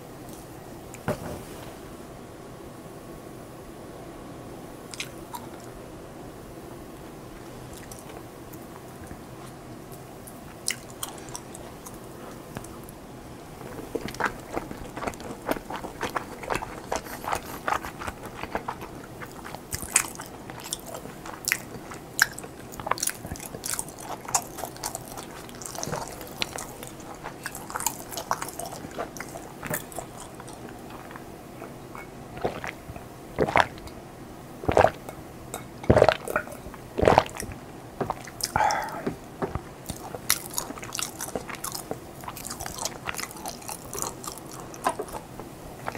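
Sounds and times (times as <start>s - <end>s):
background hiss: 0.0s - 45.9s
person chewing food: 4.9s - 5.7s, 10.3s - 12.9s, 13.6s - 34.0s, 34.6s - 45.9s.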